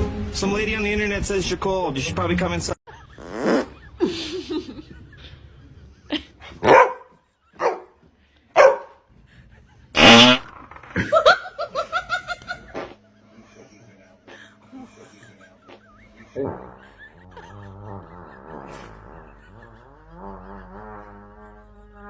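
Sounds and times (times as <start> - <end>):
dog barking: 6.6 - 9.0.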